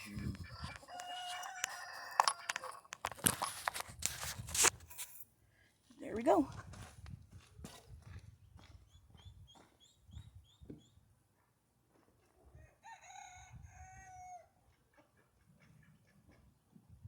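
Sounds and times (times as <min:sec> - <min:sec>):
rooster crowing: 0:00.6 - 0:02.8, 0:12.6 - 0:14.6
small bird chirping: 0:08.5 - 0:11.0.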